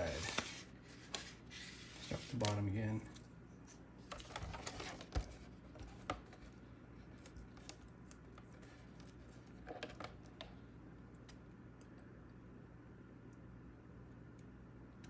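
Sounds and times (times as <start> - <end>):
plastic wrap rustling and scratching: 0.0 - 2.7, 3.6 - 10.2
faint steady hum: 0.0 - 15.0.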